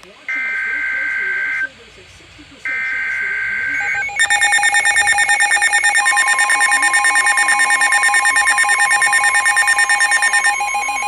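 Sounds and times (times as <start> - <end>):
steady alarm tone: 0.3 - 1.7, 2.7 - 11.0
rapidly pulsing electronic beep: 2.7 - 11.0.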